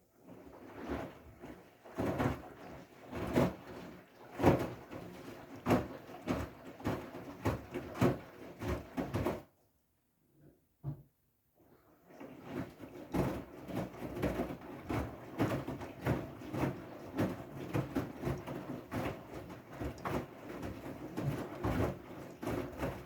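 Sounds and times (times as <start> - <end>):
laundry thudding in drum: 0.7 - 9.5.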